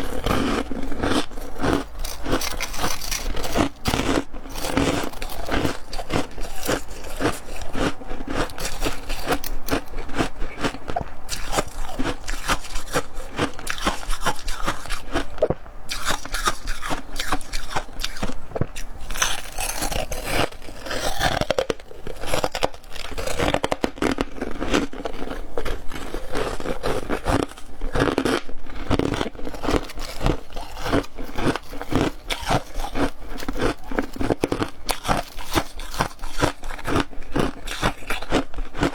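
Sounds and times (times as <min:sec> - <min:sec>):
crunching and chewing ice: 0:00.0 - 0:38.9.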